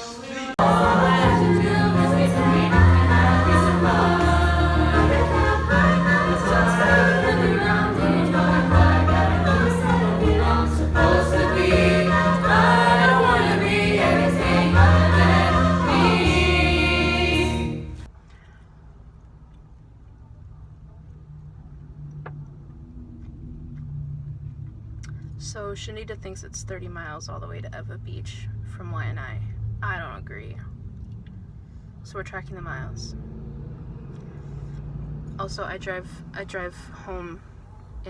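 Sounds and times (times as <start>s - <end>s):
children singing together: 0.2s - 18.1s
instrumental backing: 0.6s - 18.1s.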